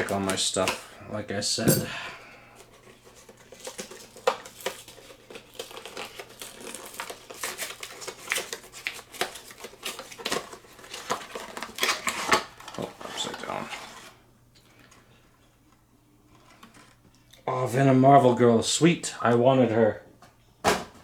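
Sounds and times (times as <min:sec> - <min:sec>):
plastic packaging crinkling: 0:02.7 - 0:13.6.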